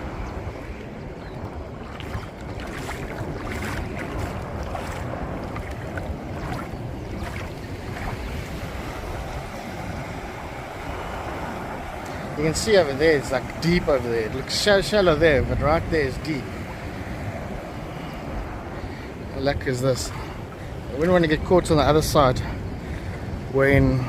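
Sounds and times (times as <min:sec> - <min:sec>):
waves and surf rushing: 0:00.0 - 0:24.0
wind buffeting microphone: 0:00.0 - 0:24.0
water crackling: 0:01.4 - 0:08.3.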